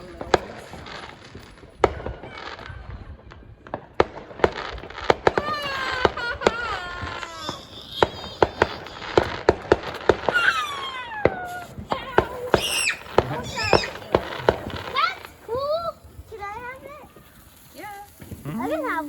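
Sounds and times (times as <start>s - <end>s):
fireworks popping: 0.0s - 19.0s.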